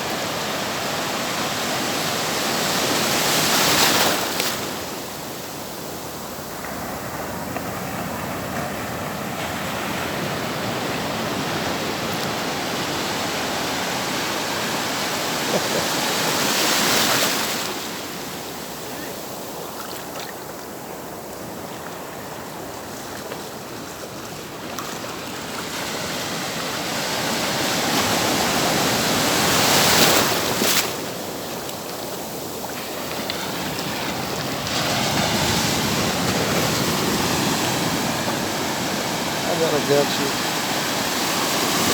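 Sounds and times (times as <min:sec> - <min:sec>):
ocean surf washing: 0:00.0 - 0:41.9
waves breaking on shore: 0:00.0 - 0:41.9.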